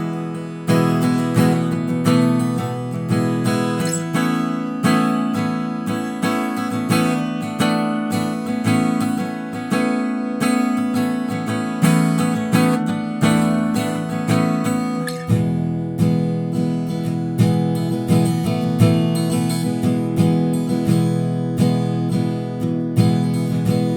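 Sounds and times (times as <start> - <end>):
acoustic guitar strumming: 0.0 - 23.9.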